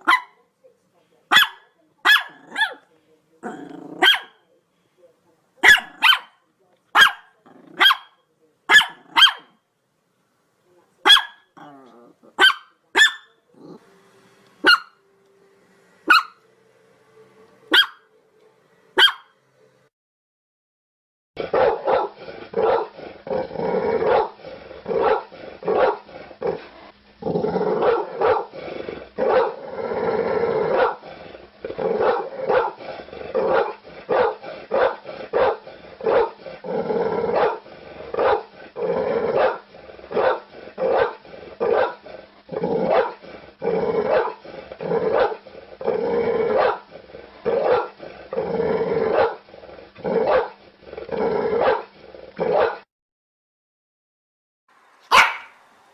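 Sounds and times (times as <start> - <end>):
dog barking: 0.0 - 0.4, 1.3 - 2.8, 3.6 - 4.4, 5.6 - 9.6, 11.0 - 11.5, 12.3 - 13.4, 14.6 - 15.0, 16.1 - 16.4, 17.7 - 18.0, 19.0 - 19.3, 21.5 - 23.0, 24.0 - 24.4, 25.0 - 26.1, 27.8 - 28.5, 29.2 - 29.6, 30.7 - 31.0, 32.0 - 32.8, 33.4 - 36.4, 37.3 - 37.6, 38.2 - 38.5, 39.3 - 42.0, 42.9 - 43.2, 44.1 - 44.4, 45.1 - 45.4, 46.5 - 46.9, 47.6 - 48.0, 49.1 - 49.4, 50.2 - 50.6, 51.6 - 51.9, 52.5 - 52.8, 55.1 - 55.6
dog growling: 3.4 - 4.3, 7.4 - 7.9, 11.6 - 12.4, 13.5 - 13.9, 21.4 - 52.9.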